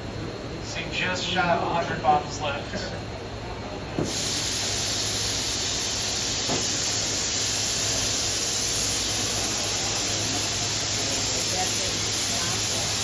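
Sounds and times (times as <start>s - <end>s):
machinery air hiss: 4.0s - 13.0s.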